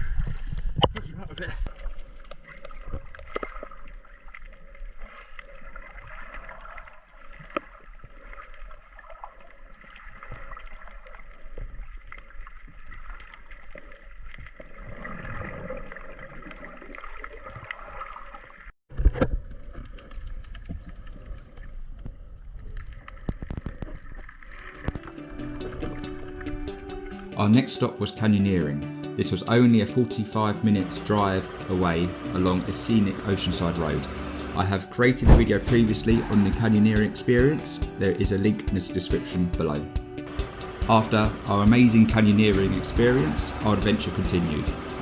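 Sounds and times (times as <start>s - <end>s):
underwater gurgling and bubbles: 1.6s - 26.8s
steady hum: 30.6s - 38.2s, 40.3s - 45.0s
sharp loud knock: 35.2s - 37.1s.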